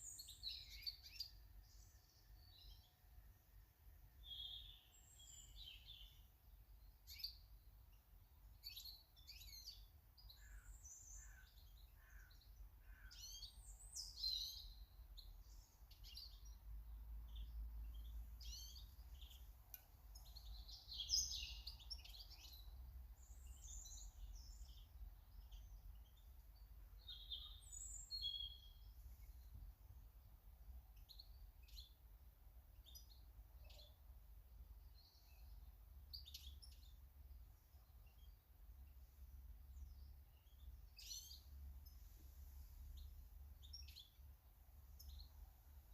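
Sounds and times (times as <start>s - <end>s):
small birds chirping: 0.0s - 45.9s.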